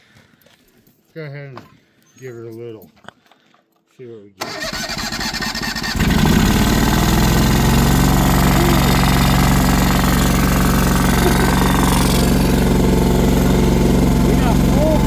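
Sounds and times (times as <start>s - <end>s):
riding mower engine running: 4.4s - 15.0s.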